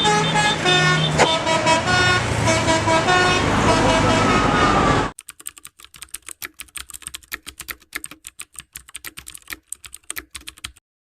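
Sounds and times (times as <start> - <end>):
rapid keyboard-like clicking: 5.2 - 10.8.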